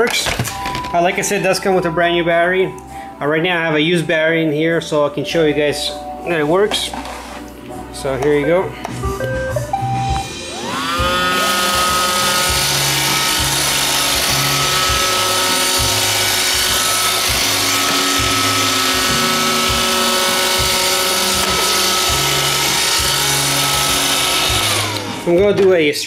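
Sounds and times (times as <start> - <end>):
robot vacuum motor whine: 10.3 - 25.3.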